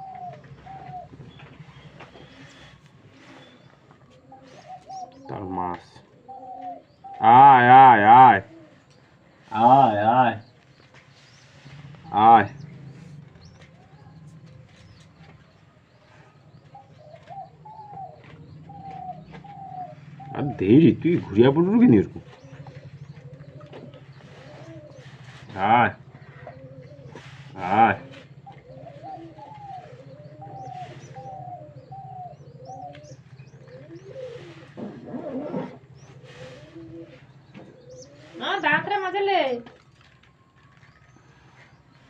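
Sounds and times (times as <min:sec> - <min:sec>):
steady low hum: 0:00.0 - 0:39.0
baby birds calling: 0:00.0 - 0:39.7
pigeons cooing: 0:00.0 - 0:42.0.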